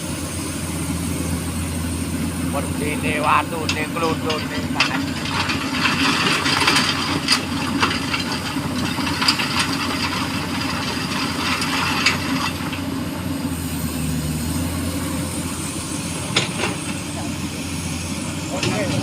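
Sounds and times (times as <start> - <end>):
excavator diesel engine running: 0.0 - 19.0
stones clattering into truck: 3.7 - 12.8.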